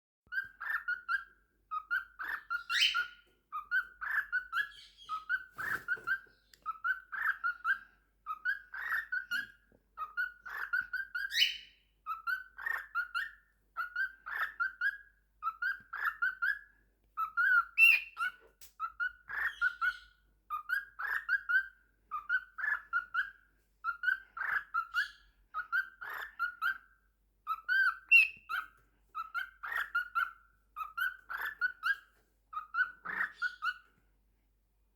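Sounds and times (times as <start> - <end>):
cockatiel warbling: 0.3 - 16.6, 32.6 - 33.8.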